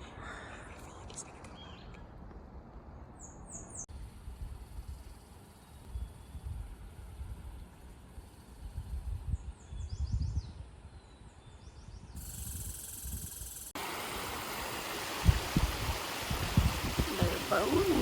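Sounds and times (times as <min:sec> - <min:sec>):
steady rushing hiss: 0:03.9 - 0:09.2, 0:12.2 - 0:18.0
wind rumbling on microphone: 0:05.8 - 0:13.5, 0:15.2 - 0:18.0.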